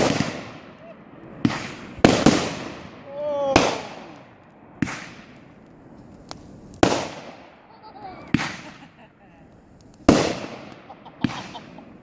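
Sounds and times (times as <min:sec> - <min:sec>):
loud sharp bangs: 0:00.0 - 0:00.8, 0:01.4 - 0:05.4, 0:06.8 - 0:07.6, 0:08.3 - 0:09.0, 0:10.1 - 0:11.8.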